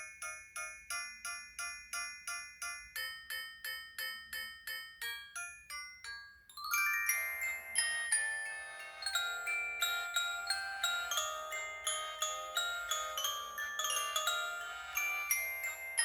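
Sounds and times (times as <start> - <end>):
chiming ringtone tune: 0.0 - 16.0
bell-like phone ringtone: 8.5 - 16.0.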